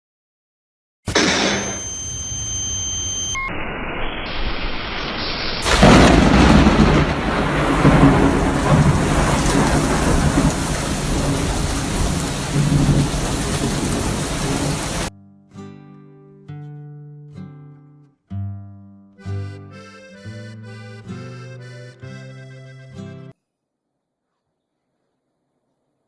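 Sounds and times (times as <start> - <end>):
heavy rain: 4.3 - 15.1
thunder: 4.3 - 15.1.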